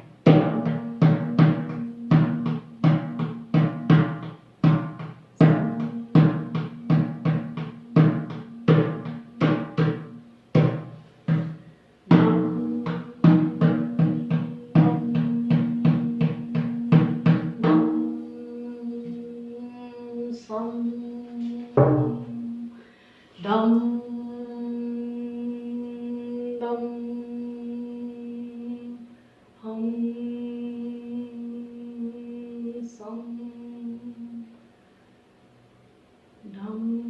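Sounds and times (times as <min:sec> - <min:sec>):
person chanting: 0:00.0 - 0:04.2, 0:05.4 - 0:22.8, 0:23.4 - 0:34.5
drum beaten: 0:00.0 - 0:18.4, 0:21.8 - 0:22.7
steady held tone: 0:05.4 - 0:22.9.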